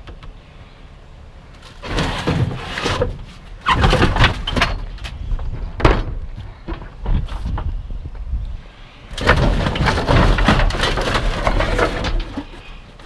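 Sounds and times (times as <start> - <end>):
wind buffeting microphone: 4.8 - 9.5.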